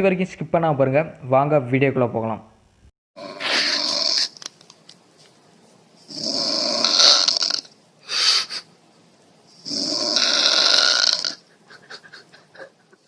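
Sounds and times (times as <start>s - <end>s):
person snoring loudly: 3.2s - 4.3s, 6.1s - 8.5s, 9.6s - 11.5s
breath: 8.0s - 8.7s.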